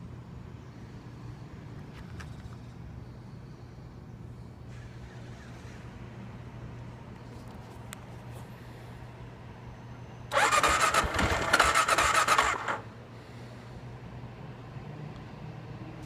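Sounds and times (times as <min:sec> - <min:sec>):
electric starter cranking engine: 0:10.3 - 0:12.9.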